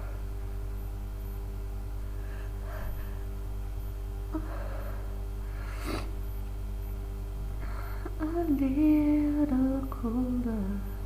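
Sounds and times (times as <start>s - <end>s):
woman breathing: 0.0s - 0.4s, 2.0s - 3.5s, 4.3s - 6.2s, 7.5s - 8.2s
low electrical hum: 0.0s - 11.0s.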